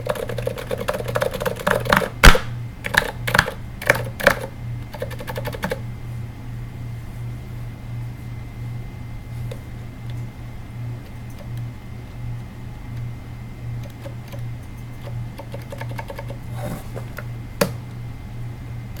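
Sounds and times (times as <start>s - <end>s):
muffled keyboard keystrokes: 0.0s - 2.1s, 2.9s - 5.8s, 13.8s - 16.4s.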